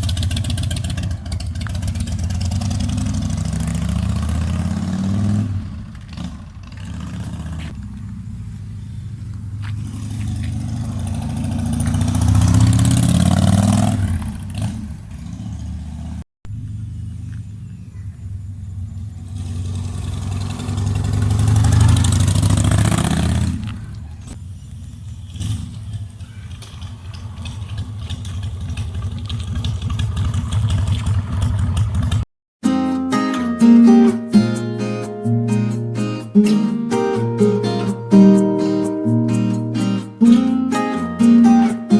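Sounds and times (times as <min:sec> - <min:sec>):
motorcycle engine revving: 0:00.0 - 0:32.3.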